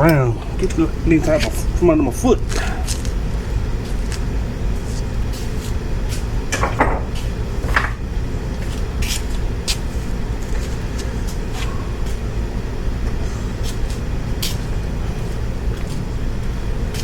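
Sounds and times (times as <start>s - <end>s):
steady low hum: 0.0s - 17.0s
tools and metal parts clunking: 6.5s - 8.0s.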